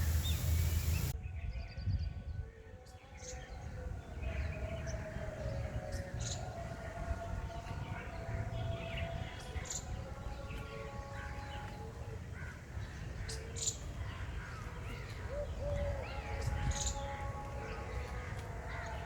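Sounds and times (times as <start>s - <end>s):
birds calling and chirping: 0.0s - 1.6s, 3.0s - 19.0s.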